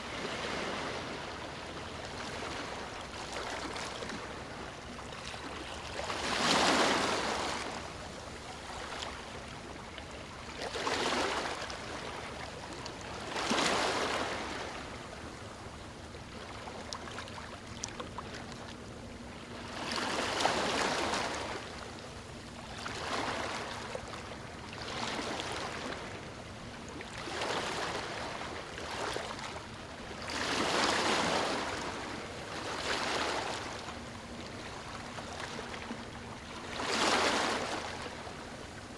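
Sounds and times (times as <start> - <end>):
small waves breaking on beach: 0.0 - 9.2, 30.2 - 38.9.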